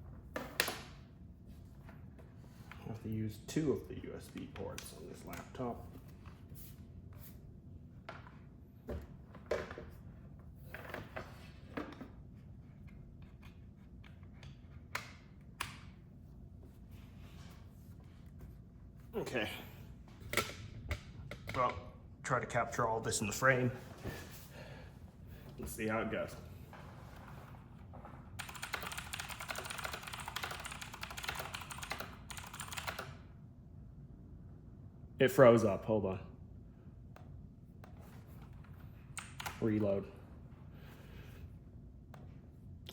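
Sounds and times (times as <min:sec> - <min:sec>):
mechanical keyboard typing: 0:28.4 - 0:33.2
low steady hum: 0:30.2 - 0:42.9.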